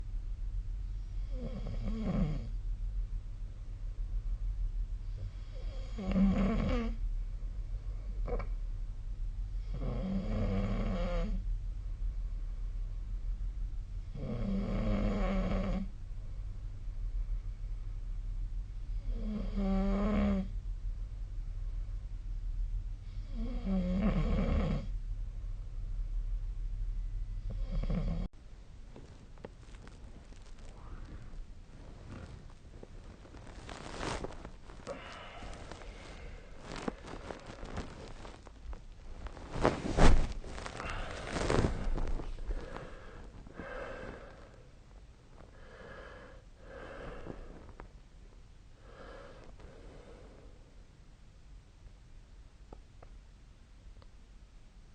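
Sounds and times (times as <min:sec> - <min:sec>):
steady low hum: 0:00.0 - 0:54.9
person snoring softly: 0:01.2 - 0:02.6, 0:05.0 - 0:07.0, 0:09.6 - 0:11.4, 0:14.1 - 0:15.9, 0:18.9 - 0:20.5, 0:23.0 - 0:24.9, 0:27.4 - 0:28.3, 0:30.4 - 0:38.5, 0:39.2 - 0:44.7, 0:45.5 - 0:47.9
person snoring: 0:34.8 - 0:36.9, 0:40.6 - 0:44.6.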